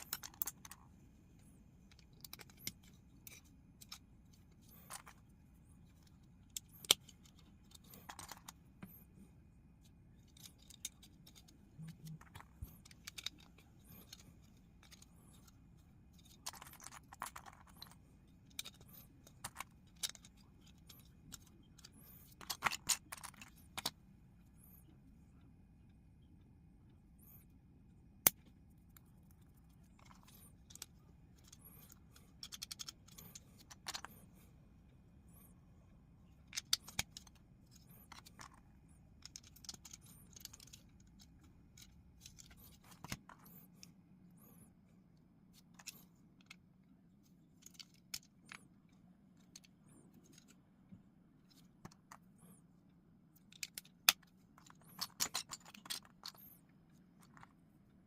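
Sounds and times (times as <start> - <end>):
plastic bricks clicking together: 0.0 - 0.8, 16.2 - 24.0, 30.0 - 34.2, 36.4 - 43.5, 53.4 - 56.5
loose plastic pieces clattering: 16.1 - 23.9, 39.2 - 43.6, 53.4 - 56.5.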